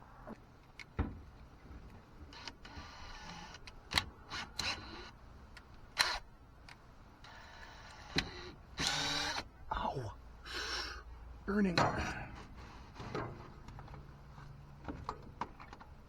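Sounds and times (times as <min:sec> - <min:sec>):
power drill drilling: 0:07.4 - 0:09.4.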